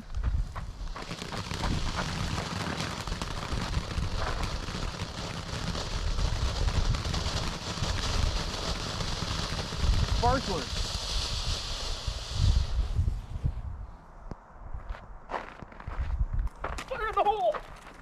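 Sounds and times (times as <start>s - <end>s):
firework fizzing and crackling: 0.0s - 13.4s.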